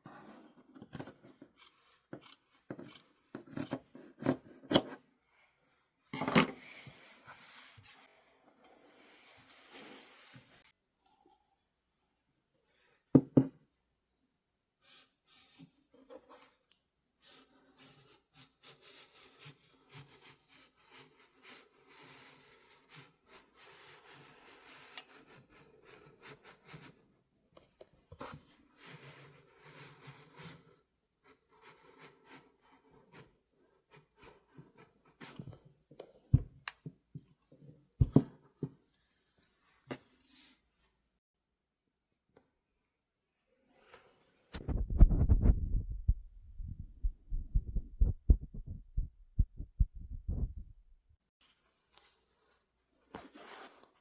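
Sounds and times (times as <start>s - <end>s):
needle and thread through cloth: 43.8s - 46.8s
fabric and needle rustling: 44.5s - 51.0s.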